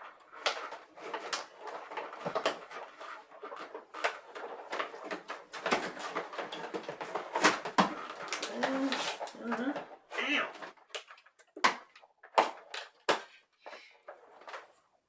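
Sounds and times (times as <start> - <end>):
plastic packaging crinkling: 0.3 - 9.8.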